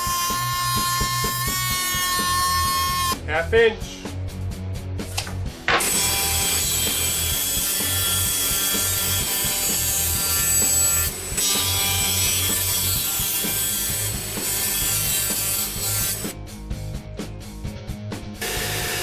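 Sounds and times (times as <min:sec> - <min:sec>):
thickness planer cutting board: 0:05.7 - 0:16.2, 0:18.4 - 0:19.0.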